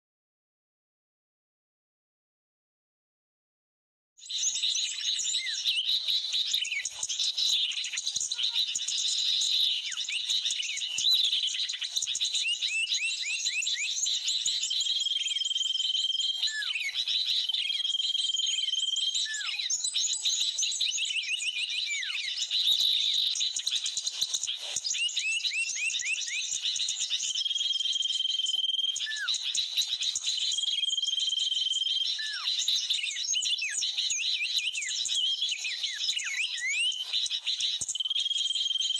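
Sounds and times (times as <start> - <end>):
bird chirps chorus: 4.2 - 38.9
agitated bulbul calls: 6.2 - 11.6.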